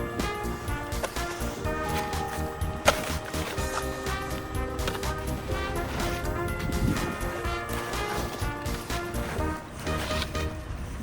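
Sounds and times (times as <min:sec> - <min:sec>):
background music with low beat: 0:00.0 - 0:10.7.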